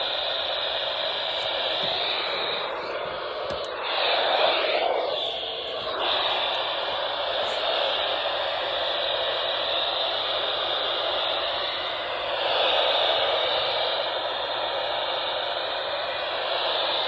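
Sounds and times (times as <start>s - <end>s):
radio static hiss: 0.0s - 12.2s.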